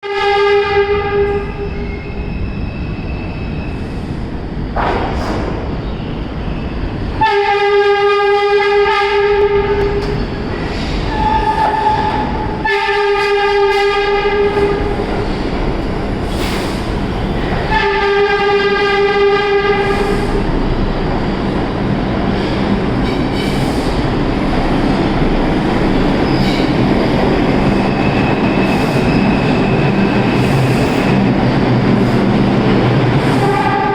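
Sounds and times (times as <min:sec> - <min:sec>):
subway train horn blasts: 0:00.0 - 0:03.5, 0:06.9 - 0:10.3, 0:11.0 - 0:15.2, 0:17.4 - 0:20.9, 0:33.1 - 0:33.9
train rumble and wheel clatter: 0:00.0 - 0:33.9.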